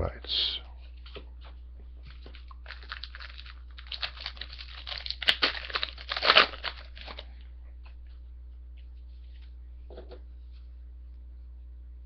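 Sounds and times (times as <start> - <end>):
wrapper crinkling and tearing: 2.3 - 7.3.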